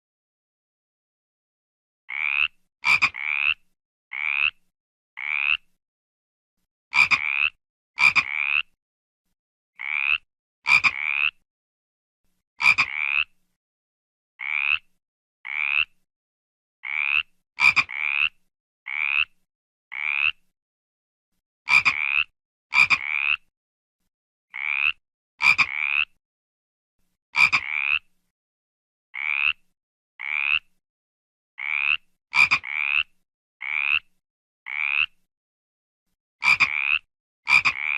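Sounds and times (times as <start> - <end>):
frog croaking: 2.1 - 4.6, 5.2 - 5.7, 7.0 - 8.8, 9.8 - 11.4, 12.6 - 13.4, 14.4 - 14.9, 15.5 - 16.0, 16.8 - 20.4, 21.7 - 23.5, 24.5 - 26.2, 27.4 - 28.1, 29.2 - 29.6, 30.2 - 30.7, 31.6 - 34.1, 34.7 - 35.2, 36.4 - 37.9.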